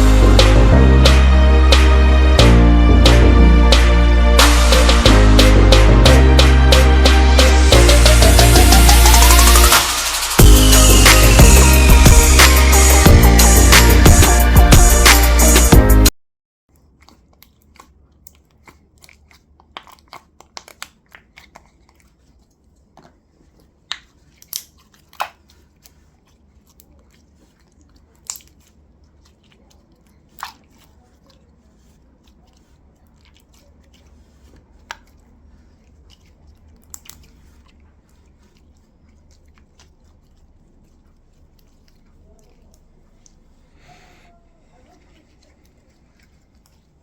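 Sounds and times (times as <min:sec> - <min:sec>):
slime squeezed by hand: 0:16.9 - 0:47.0.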